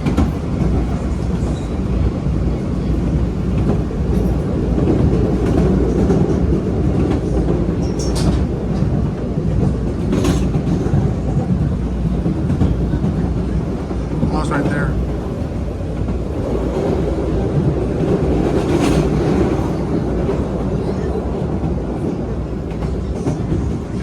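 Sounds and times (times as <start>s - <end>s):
train wheels rumbling on rails: 0.0s - 24.0s.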